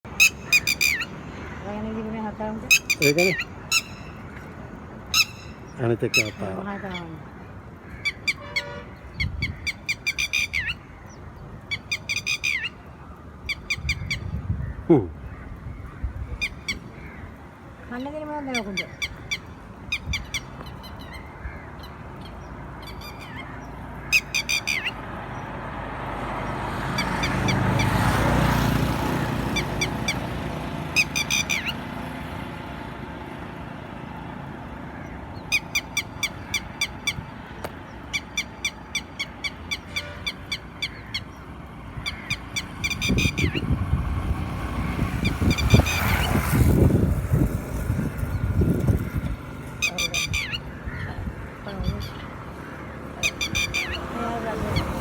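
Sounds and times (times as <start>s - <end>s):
geese honking: 7.8s - 10.8s, 38.1s - 41.4s.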